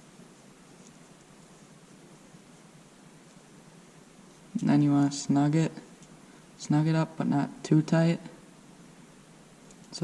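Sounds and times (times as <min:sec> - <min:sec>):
faint steady hiss: 0:00.0 - 0:10.0.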